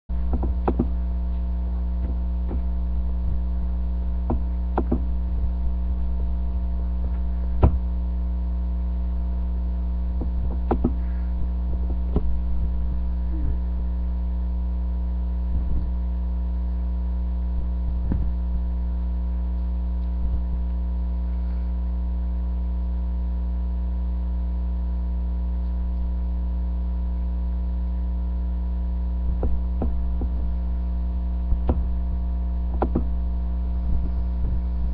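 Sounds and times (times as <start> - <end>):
electrical mains hum: 0.1 - 34.9
faint clicks and knocks: 10.2 - 12.4, 32.7 - 33.2.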